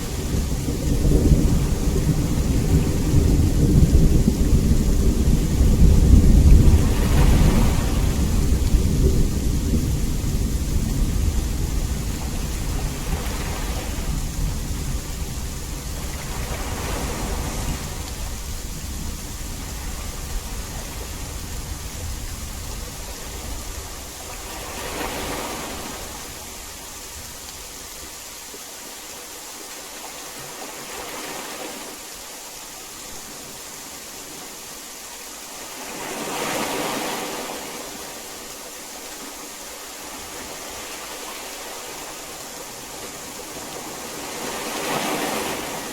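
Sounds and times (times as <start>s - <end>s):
thunder rumble: 0.0s - 27.4s
heavy rain: 0.0s - 45.9s.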